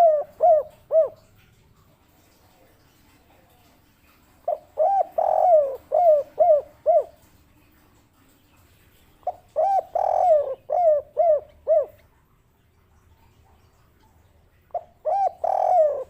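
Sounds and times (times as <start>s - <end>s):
dove cooing: 0.0s - 1.5s, 4.3s - 7.3s, 9.2s - 12.1s, 14.6s - 16.0s.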